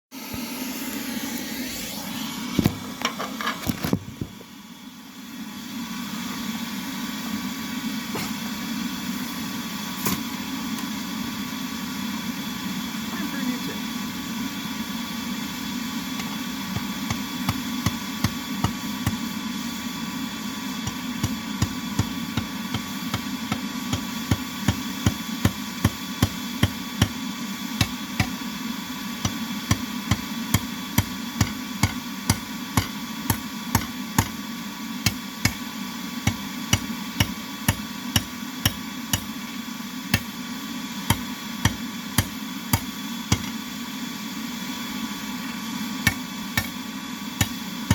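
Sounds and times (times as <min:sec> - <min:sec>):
steady hum: 0:03.9 - 0:47.9
hammer on anvil: 0:29.2 - 0:34.4, 0:36.3 - 0:39.3, 0:41.1 - 0:43.6.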